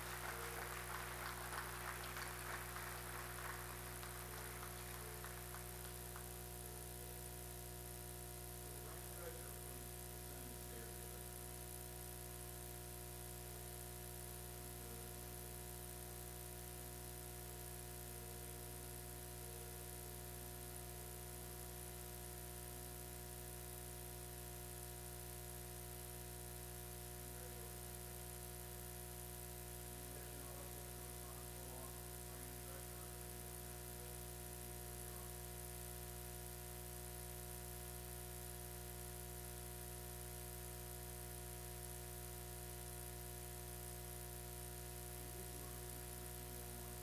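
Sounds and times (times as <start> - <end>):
recording hiss: 0.0 - 6.4
electrical hum and buzz: 0.0 - 47.0.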